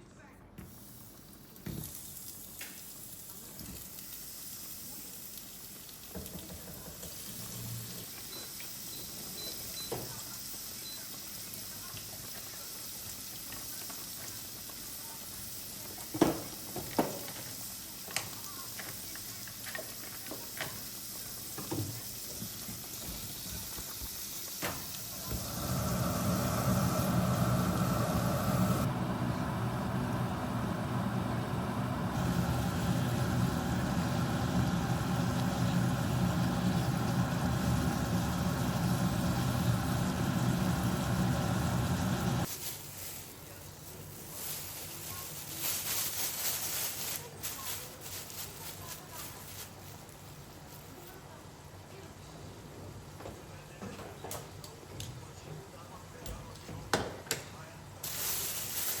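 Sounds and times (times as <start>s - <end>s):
appliance motor hum: 25.2s - 42.5s
steady hiss: 58.0s - 59.0s.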